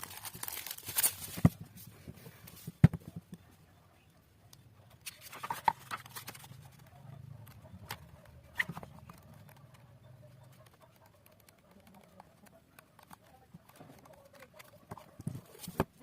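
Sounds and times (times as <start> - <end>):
packaging rustling: 0.0 - 1.6, 5.1 - 6.6.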